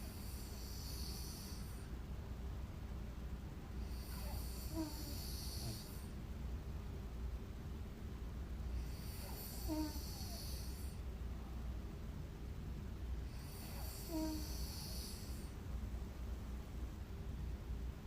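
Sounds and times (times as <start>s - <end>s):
woman snoring: 0.2s - 1.8s, 3.8s - 6.1s, 8.7s - 11.0s, 13.3s - 15.5s.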